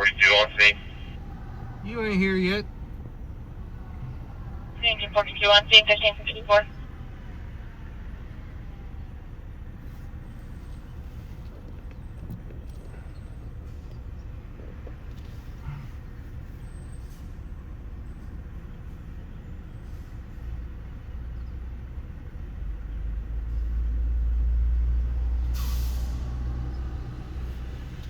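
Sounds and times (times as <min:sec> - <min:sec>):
truck engine rumble: 0:00.0 - 0:28.0
air brakes hissing: 0:25.5 - 0:26.4.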